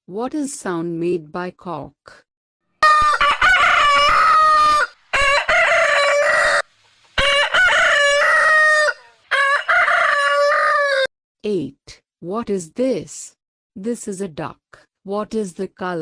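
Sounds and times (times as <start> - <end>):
rooster crowing: 2.8 - 11.1.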